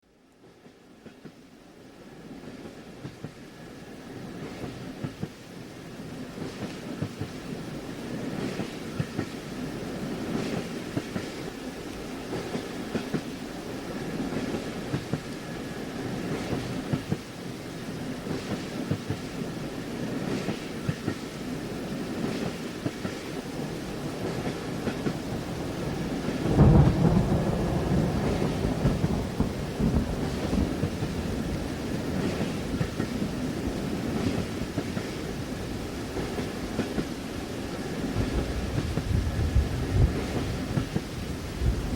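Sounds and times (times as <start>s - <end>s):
train wheels clacking: 8.1s - 17.3s, 28.1s - 41.2s
rain pattering: 22.0s - 41.9s
low rumble of thunder: 23.6s - 34.7s, 38.0s - 41.9s.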